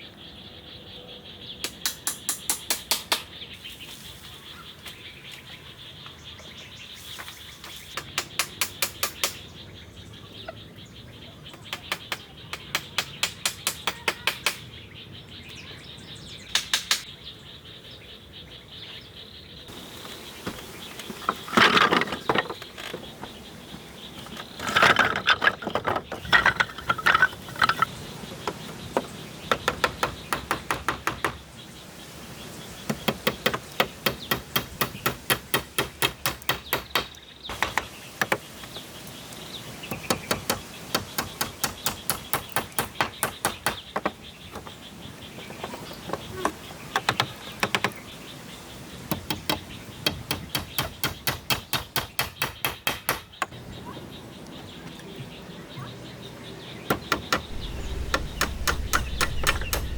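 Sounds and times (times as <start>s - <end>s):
hand tool striking wood: 32.9s - 38.4s, 40.0s - 44.2s, 49.1s - 53.4s.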